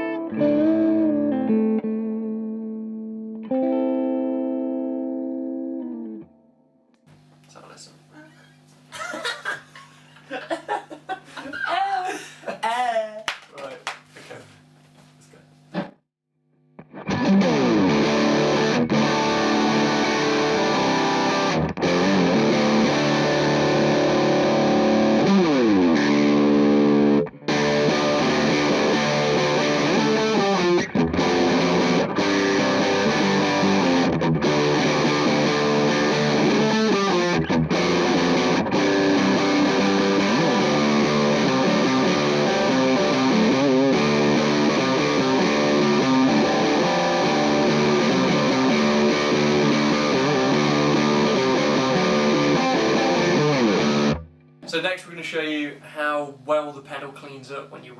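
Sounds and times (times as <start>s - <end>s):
distorted electric guitar: 0.0s - 6.3s, 16.8s - 54.3s.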